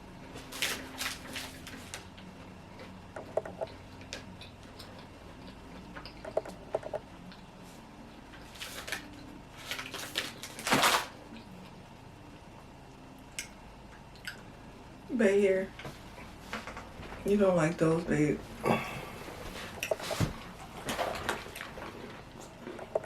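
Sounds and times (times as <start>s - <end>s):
plastic wrapper crinkling: 8.6s - 11.1s.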